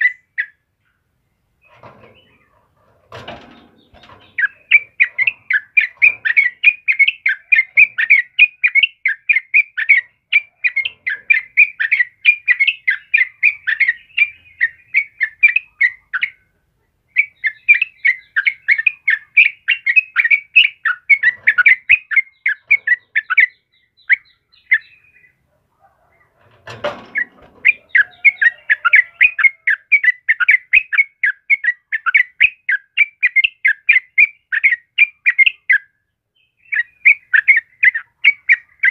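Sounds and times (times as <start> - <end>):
rustle or thump: 1.7 - 4.4, 26.4 - 27.7.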